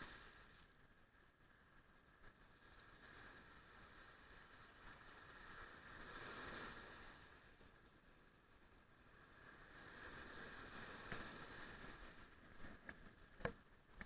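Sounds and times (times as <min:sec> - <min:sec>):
faint surf: 0:00.0 - 0:14.0.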